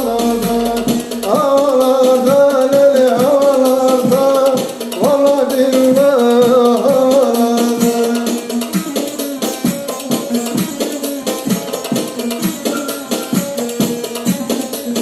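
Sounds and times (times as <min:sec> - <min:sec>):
folk music with ornamented melody: 0:06.0 - 0:15.0.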